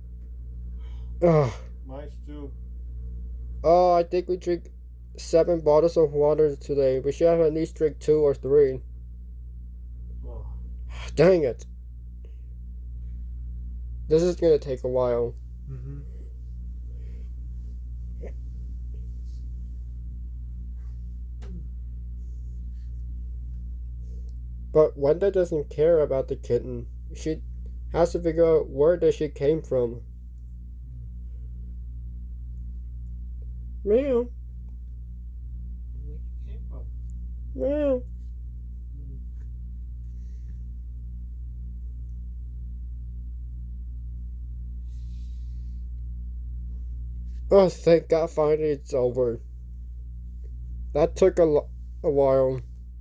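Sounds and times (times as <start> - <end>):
low hum with steady tones: 0.0 - 53.0.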